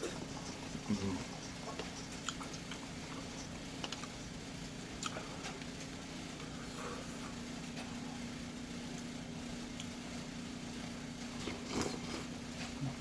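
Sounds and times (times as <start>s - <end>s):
chewing mouth noises: 0.0s - 4.2s, 4.9s - 5.7s, 11.3s - 13.0s
steady low hum: 0.0s - 13.0s.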